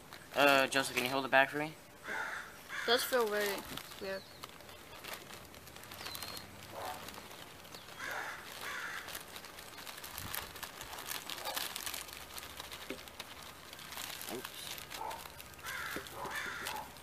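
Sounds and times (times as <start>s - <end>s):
plastic bag rustling: 0.0s - 1.5s, 2.9s - 17.0s
short calls: 1.8s - 5.0s
foam balls clicking and pattering: 3.0s - 17.0s.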